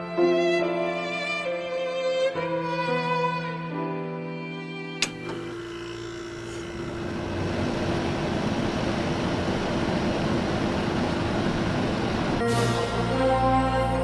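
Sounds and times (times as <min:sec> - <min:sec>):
click: 0:05.0 - 0:05.4.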